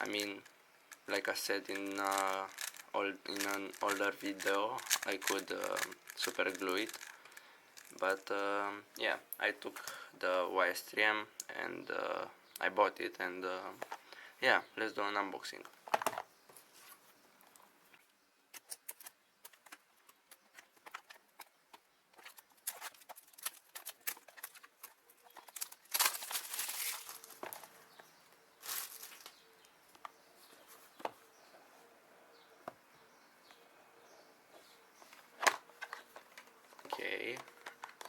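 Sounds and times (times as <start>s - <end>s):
packaging crinkling and rustling: 0.0s - 8.3s, 18.6s - 27.8s, 28.6s - 29.4s, 35.4s - 38.0s.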